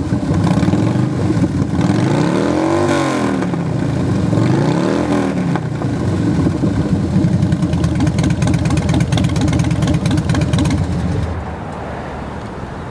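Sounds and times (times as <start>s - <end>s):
motorcycle engine idling: 5.4s - 11.3s.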